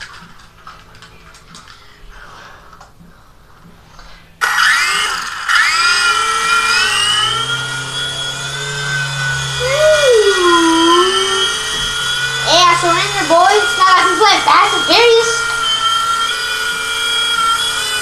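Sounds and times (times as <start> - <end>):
toy airplane motor whining: 4.4 - 18.0.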